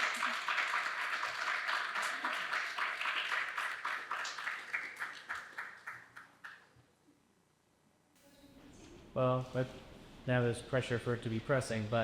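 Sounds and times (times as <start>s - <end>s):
audience applauding: 0.0s - 6.7s.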